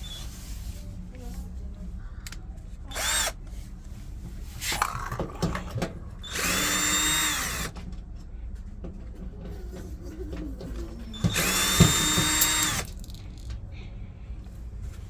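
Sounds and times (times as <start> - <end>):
power drill whining: 2.9 - 3.4, 6.2 - 7.8, 11.1 - 13.1.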